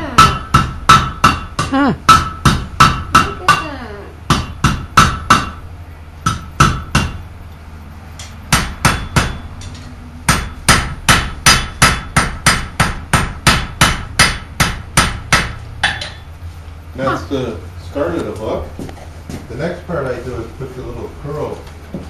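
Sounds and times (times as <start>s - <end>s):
hammer striking iron on anvil: 0.0s - 5.6s, 6.2s - 7.2s, 8.2s - 16.3s.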